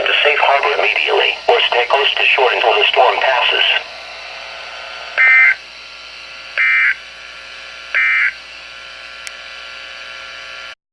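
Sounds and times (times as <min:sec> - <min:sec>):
steady radio hiss: 0:00.0 - 0:08.1.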